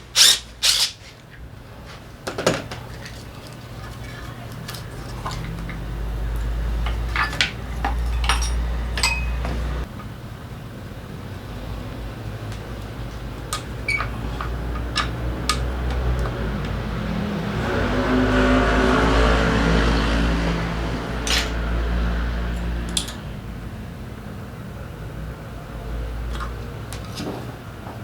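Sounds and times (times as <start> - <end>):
steady machine hum: 3.8 - 17.8
metallic clinks: 6.8 - 9.8.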